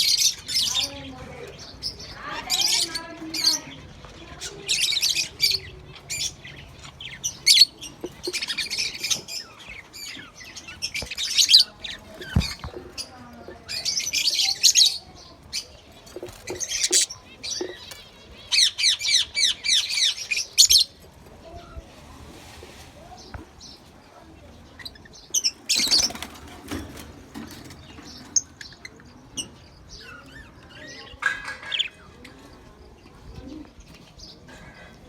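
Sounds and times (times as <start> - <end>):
budgerigars chirping: 0.0 - 21.0.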